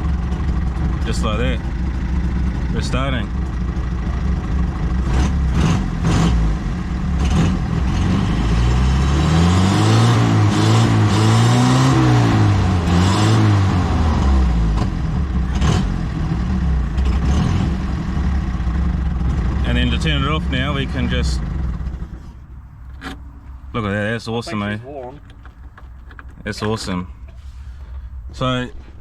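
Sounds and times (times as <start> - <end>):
car engine revving and idling: 0.0 - 29.0.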